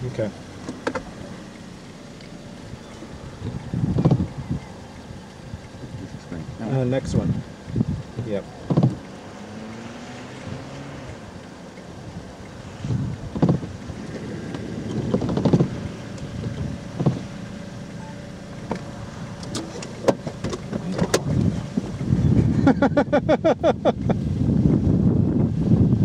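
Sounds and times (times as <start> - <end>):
car cabin hum: 0.0 - 26.0
knocks and clicks: 8.6 - 9.2, 13.3 - 17.3.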